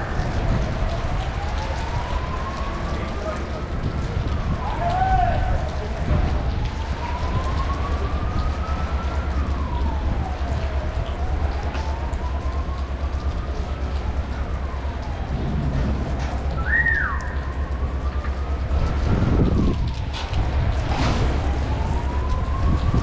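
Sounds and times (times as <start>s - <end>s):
siren-like wail: 0.0s - 23.0s
steady low rumble: 8.1s - 23.0s.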